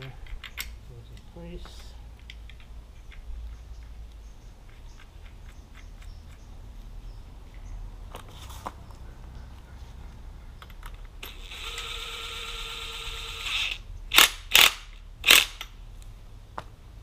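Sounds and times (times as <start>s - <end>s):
cordless power wrench whirring: 11.2s - 15.7s
power wrench short bursts: 11.2s - 15.7s.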